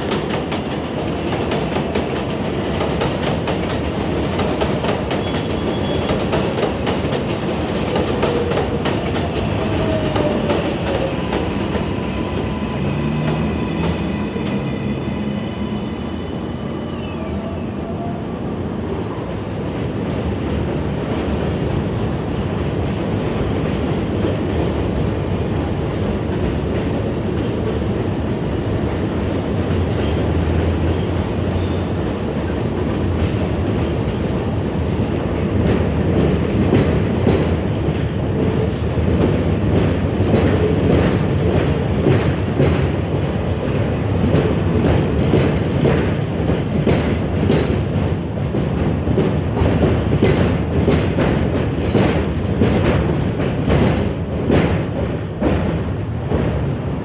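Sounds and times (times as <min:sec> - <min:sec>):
subway train rumble: 0:00.0 - 0:57.0
wheels clicking over rail joints: 0:35.6 - 0:55.8.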